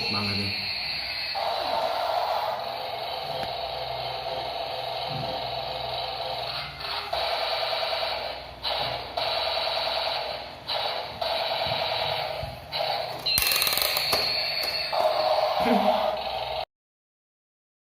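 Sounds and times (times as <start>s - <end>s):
high steady tone: 0.0s - 7.2s
toy electronic rattling noise: 0.0s - 16.6s.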